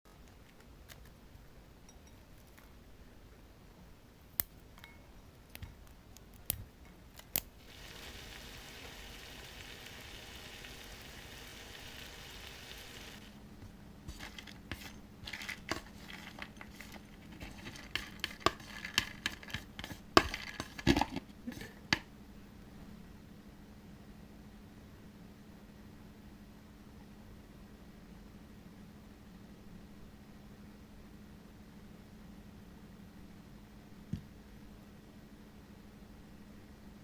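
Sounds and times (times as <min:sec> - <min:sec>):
steady hiss: 0:07.4 - 0:15.0.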